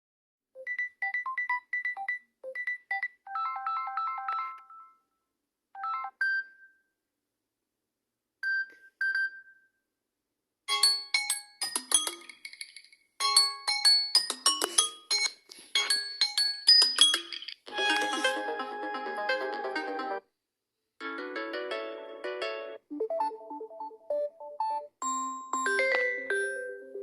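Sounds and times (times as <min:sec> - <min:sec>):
phone ringtone melodies: 0:00.6 - 0:05.0, 0:05.8 - 0:06.6, 0:13.2 - 0:20.2, 0:22.9 - 0:27.0.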